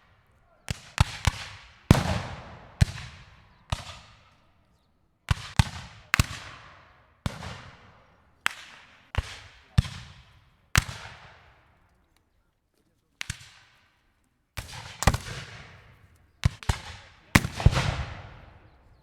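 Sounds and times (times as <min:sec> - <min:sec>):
rifle shots echoing: 0:00.7 - 0:04.3, 0:14.6 - 0:18.9.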